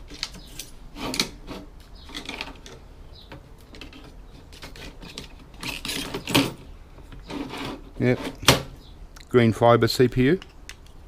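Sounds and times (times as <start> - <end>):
hand tools clicking and scraping: 0.0 - 8.6.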